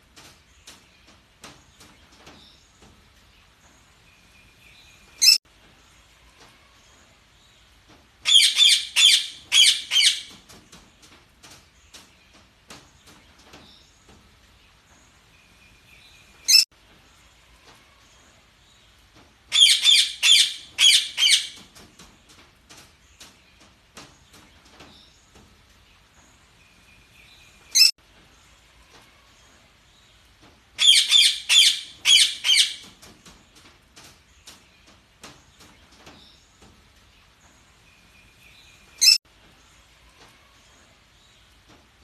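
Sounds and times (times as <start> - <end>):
soft bird chatter: 0.0 - 42.0
budgerigars chirping: 30.8 - 32.8.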